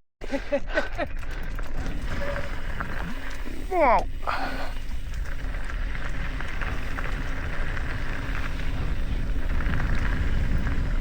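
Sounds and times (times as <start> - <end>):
bike tyres rumbling on dirt: 0.2 - 11.0
small rattles and clicks: 0.2 - 11.0
wind on microphone: 4.2 - 11.0.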